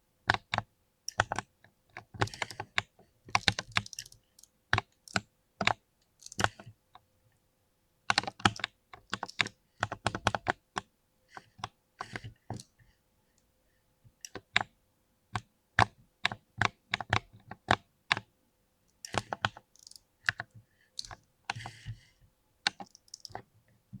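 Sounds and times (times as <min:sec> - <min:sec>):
mechanical keyboard keystrokes: 0:03.4 - 0:04.2, 0:19.1 - 0:20.4, 0:22.7 - 0:23.4.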